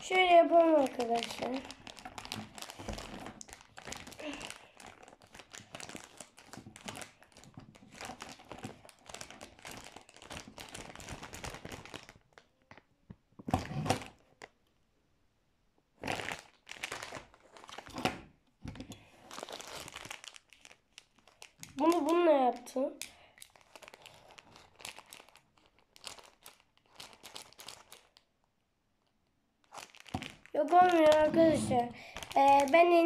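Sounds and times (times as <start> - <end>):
plastic bag crinkling: 0.0 - 14.6, 16.0 - 28.3, 29.6 - 33.0.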